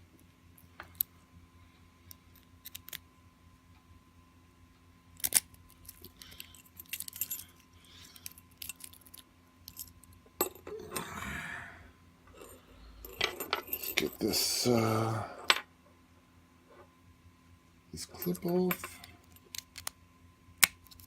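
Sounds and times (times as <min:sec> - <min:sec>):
key and padlock clicking: 0:05.2 - 0:07.5
padlock scraping rattle: 0:05.2 - 0:10.0.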